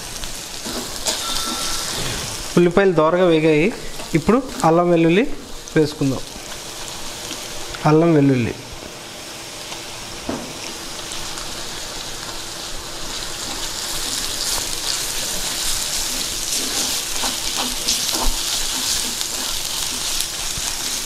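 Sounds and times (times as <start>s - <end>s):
paste and onions sizzling in oil: 0.0s - 21.0s
oil popping and crackling: 10.6s - 21.0s.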